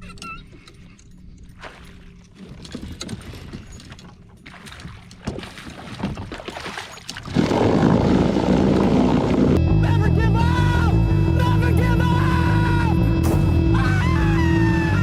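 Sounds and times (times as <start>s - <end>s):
water splashing around kayak: 1.6s - 9.6s
wind buffeting microphone: 5.2s - 9.6s.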